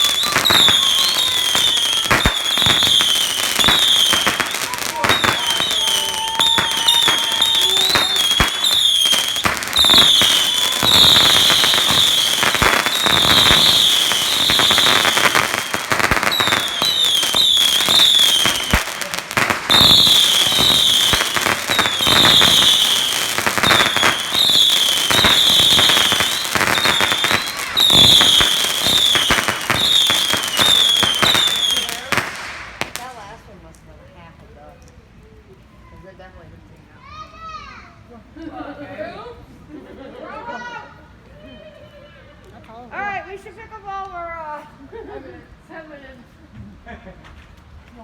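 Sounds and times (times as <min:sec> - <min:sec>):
fireworks whistling: 0:00.0 - 0:33.2
fireworks crackling: 0:00.0 - 0:35.4.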